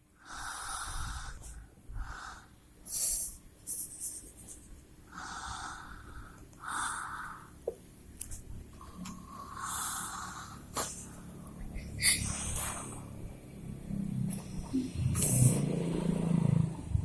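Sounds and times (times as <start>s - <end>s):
breathy hissing breaths: 0.1s - 3.4s, 5.1s - 7.6s, 8.7s - 13.2s
person snoring: 8.8s - 10.7s, 13.9s - 17.0s.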